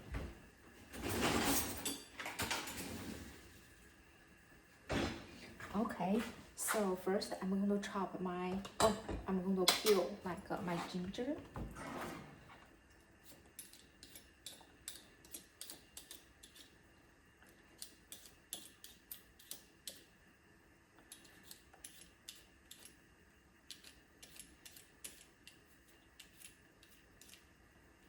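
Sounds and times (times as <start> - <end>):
scraping strokes peeling ginger: 13.2 - 16.8, 21.1 - 23.0, 23.7 - 27.5.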